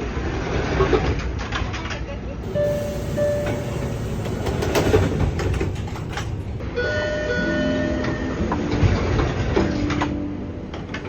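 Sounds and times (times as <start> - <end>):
train rumble: 2.4 - 7.3
subway door chime tones: 2.4 - 8.5.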